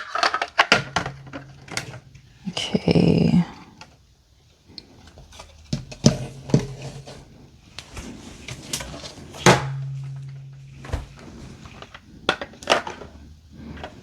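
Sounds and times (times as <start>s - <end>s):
plastic pieces knocking and clicking: 0.0s - 2.0s.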